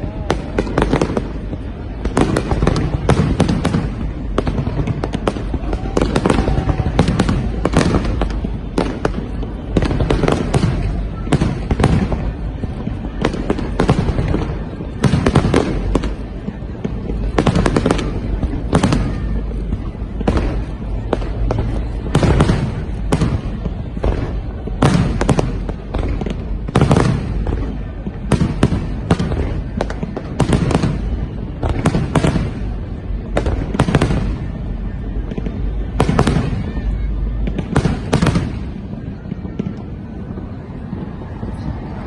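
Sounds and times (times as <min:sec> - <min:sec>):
fireworks bangs: 0:00.0 - 0:42.0.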